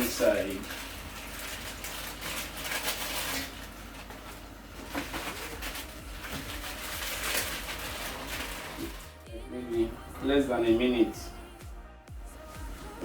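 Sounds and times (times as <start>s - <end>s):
scratchy rustling of noodles: 0.0s - 9.2s
water boiling: 0.0s - 9.2s.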